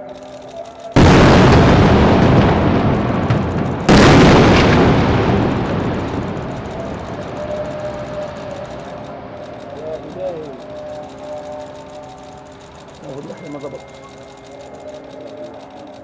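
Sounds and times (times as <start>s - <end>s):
loud explosions: 1.0s - 9.4s.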